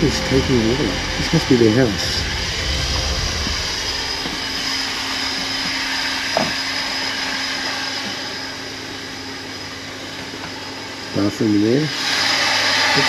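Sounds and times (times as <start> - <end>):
low hum: 0.0 - 6.4.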